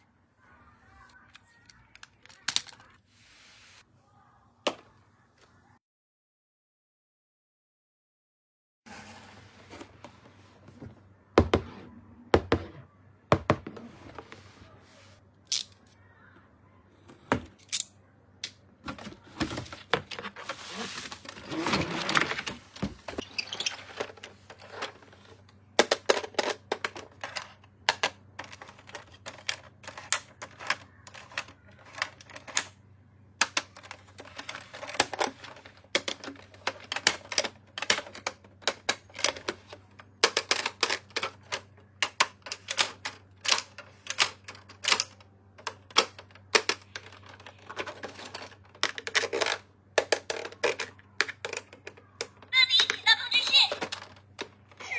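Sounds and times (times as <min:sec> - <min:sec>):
plastic toys clicking and tapping: 0:01.0 - 0:03.0, 0:23.2 - 0:54.9.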